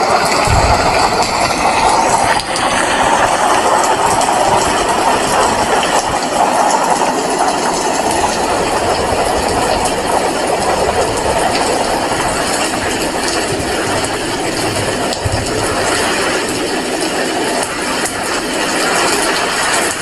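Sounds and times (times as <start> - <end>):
heavy rain falling: 0.0 - 20.0.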